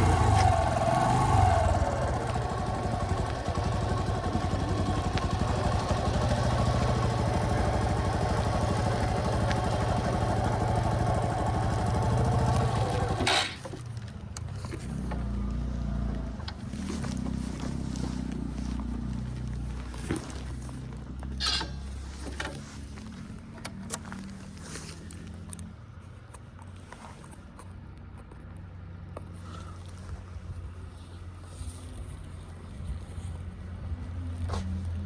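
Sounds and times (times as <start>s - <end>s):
vehicle engine idling: 0.0s - 27.4s.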